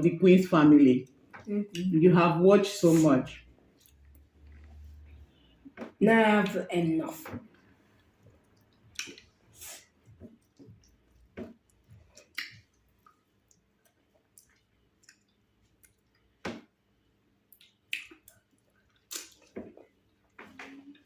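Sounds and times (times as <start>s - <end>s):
wet lip smacks: 8.6s - 9.8s, 12.2s - 13.2s, 17.5s - 18.4s, 19.0s - 19.5s
chewing clicks: 10.4s - 16.2s.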